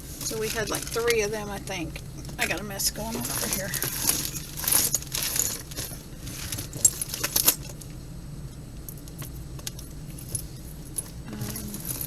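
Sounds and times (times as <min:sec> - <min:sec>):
metal jewelry clinking: 0:02.2 - 0:07.9, 0:10.2 - 0:12.0.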